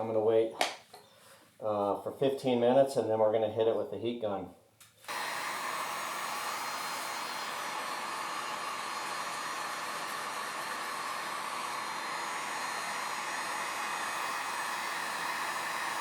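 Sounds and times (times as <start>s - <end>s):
heat gun blowing: 5.0s - 16.0s.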